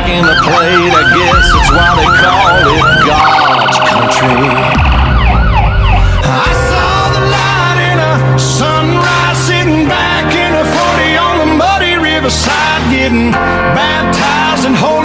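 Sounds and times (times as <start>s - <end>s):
electronic siren yelp: 0.0s - 7.1s
fast pulsing siren tone: 0.0s - 7.2s.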